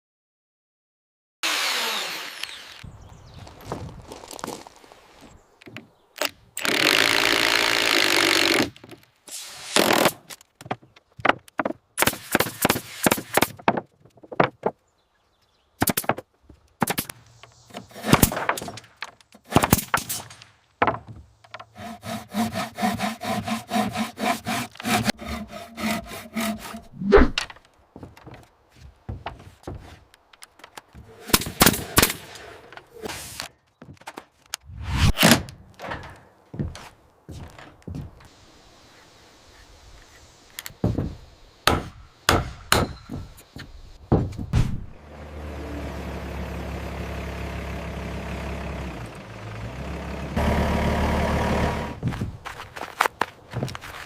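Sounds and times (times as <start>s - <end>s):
power tool motor running: 1.4s - 2.9s, 6.6s - 8.7s
sawing strokes: 1.4s - 2.9s, 17.0s - 18.7s, 21.5s - 27.4s
knocks on wood: 44.1s - 44.7s.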